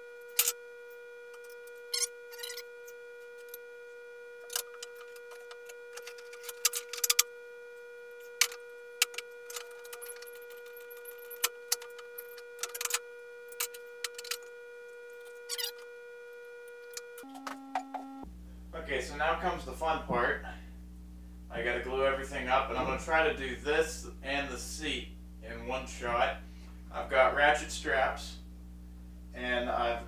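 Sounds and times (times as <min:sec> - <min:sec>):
high-pitched hum: 0:00.0 - 0:30.0
wooden chair parts and tools clicking: 0:04.5 - 0:07.2.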